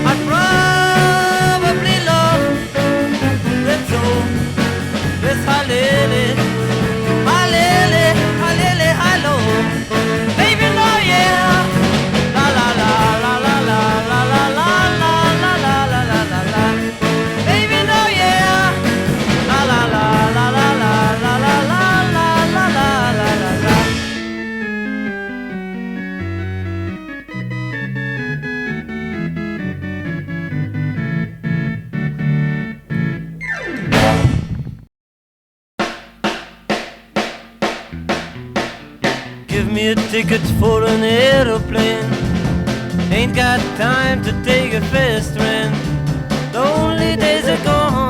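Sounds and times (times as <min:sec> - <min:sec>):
drums: 0:00.0 - 0:25.6, 0:33.4 - 0:34.9, 0:35.8 - 0:48.0
bending lead melody: 0:00.0 - 0:34.7, 0:37.9 - 0:48.0
organ playing quietly: 0:00.0 - 0:34.7, 0:38.0 - 0:48.0
bass guitar: 0:00.0 - 0:34.9, 0:37.6 - 0:48.0.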